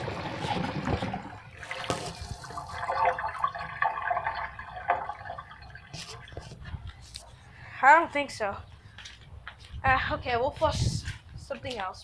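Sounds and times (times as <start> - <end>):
water gurgling through drain: 0.0 - 6.4.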